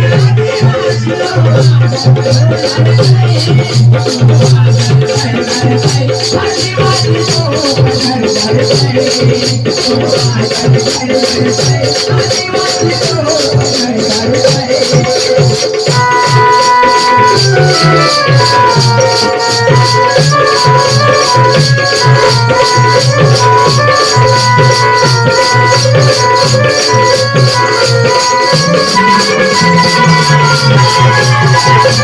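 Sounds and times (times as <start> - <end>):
instrumental folk dance music: 0.0 - 32.0
rattling shaker percussion: 0.0 - 32.0.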